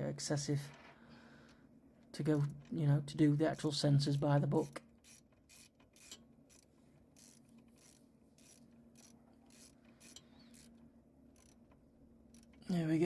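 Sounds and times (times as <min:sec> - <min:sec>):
faint ratchet wrench clicking: 0:04.6 - 0:11.6, 0:12.3 - 0:12.6.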